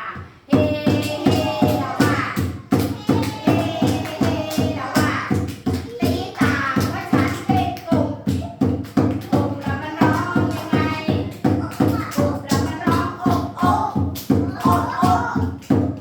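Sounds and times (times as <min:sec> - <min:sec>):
children's song singing: 0:00.0 - 0:16.0.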